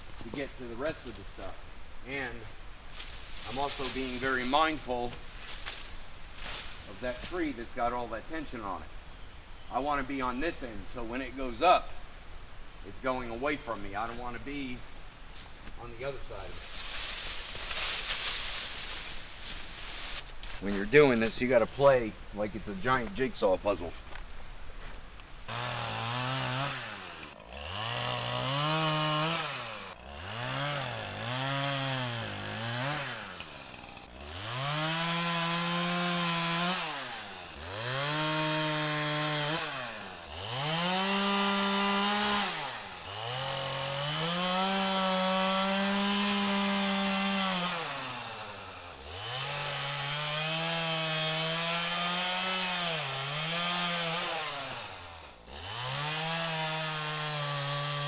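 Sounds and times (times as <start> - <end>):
chainsaw revving while cutting: 25.5 - 58.0.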